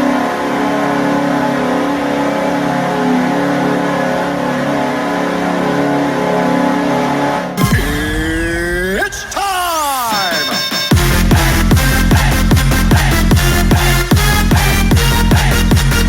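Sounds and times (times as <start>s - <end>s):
goal horn blast: 6.1s - 16.0s.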